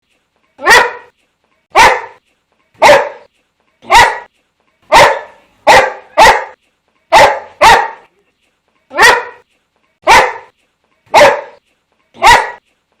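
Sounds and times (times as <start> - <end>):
dog barking: 0.6 - 1.1, 1.7 - 2.2, 2.8 - 4.3, 4.9 - 8.1, 8.9 - 9.4, 10.0 - 10.5, 11.1 - 11.6, 12.2 - 12.6.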